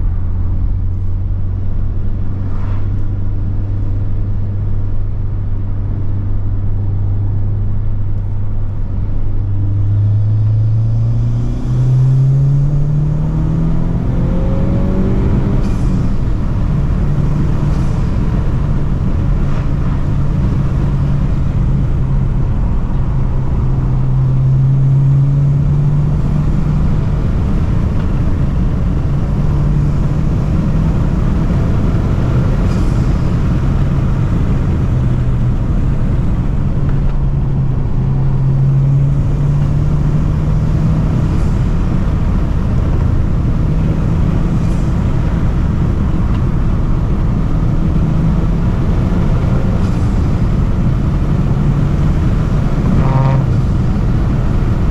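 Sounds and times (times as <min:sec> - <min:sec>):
low rumble: 0:00.0 - 0:54.9
car engine revving: 0:09.4 - 0:54.9.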